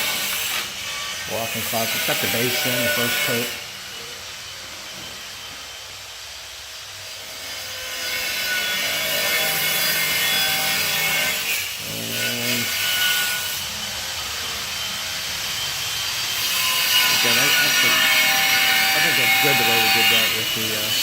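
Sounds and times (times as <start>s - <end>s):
saw cutting wood: 0.0s - 4.2s, 7.0s - 21.0s.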